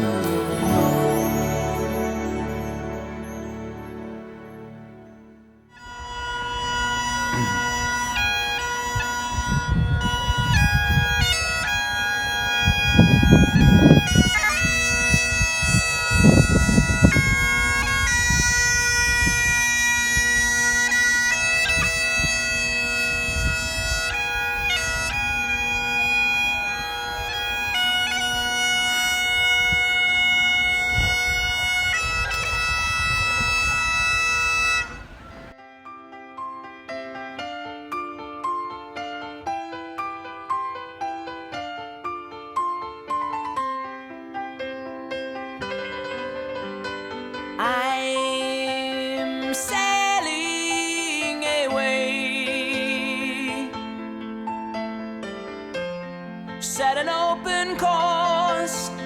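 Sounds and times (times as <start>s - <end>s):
bagpipe music: 0.0s - 35.6s
low rumbling gusts: 5.9s - 20.9s, 29.1s - 35.6s.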